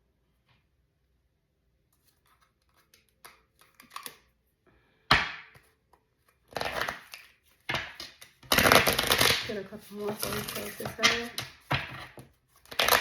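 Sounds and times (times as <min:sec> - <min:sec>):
cards clicking and rustling: 0:02.0 - 0:04.4, 0:05.5 - 0:13.0.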